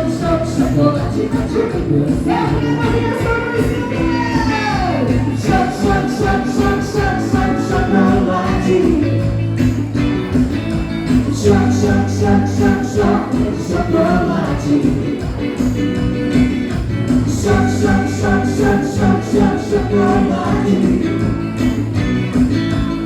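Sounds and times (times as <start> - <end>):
live band music: 0.0 - 23.0
steady drum beat: 0.0 - 23.0.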